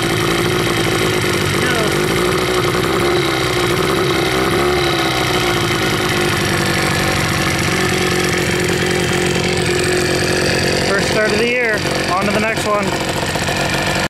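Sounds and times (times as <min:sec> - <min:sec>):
outboard motor running: 0:00.0 - 0:14.0.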